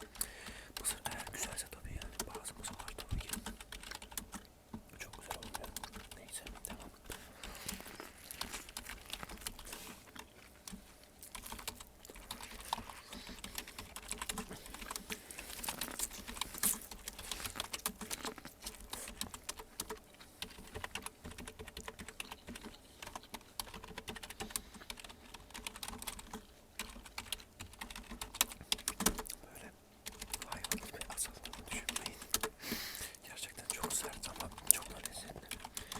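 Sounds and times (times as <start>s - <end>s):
typing on computer keyboard: 0.0s - 29.4s, 30.0s - 32.6s, 33.4s - 35.9s.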